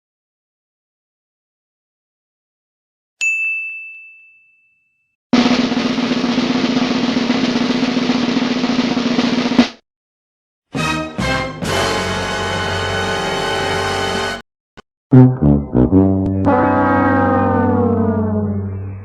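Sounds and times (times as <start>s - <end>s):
bright ding: 3.2s - 5.0s
snare drum roll: 5.4s - 9.8s.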